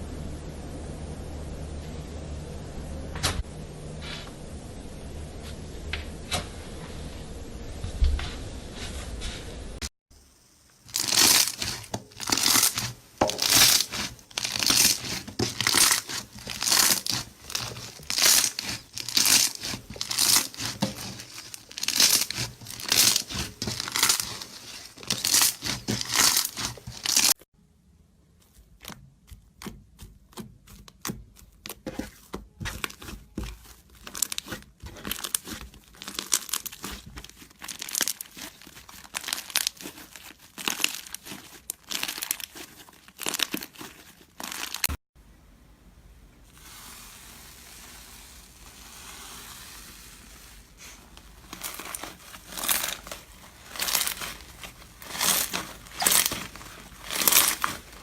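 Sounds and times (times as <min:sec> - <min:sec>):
slime squishing by hand: 0:10.8 - 0:27.4, 0:28.2 - 0:45.0, 0:46.4 - 0:58.0.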